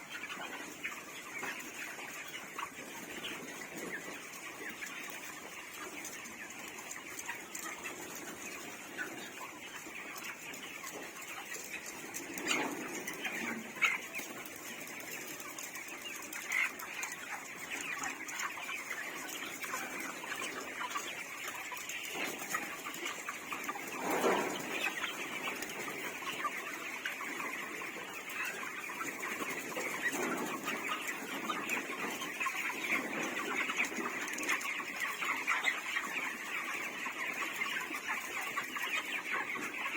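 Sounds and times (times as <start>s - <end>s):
flock of chickens clucking: 0.0s - 39.9s.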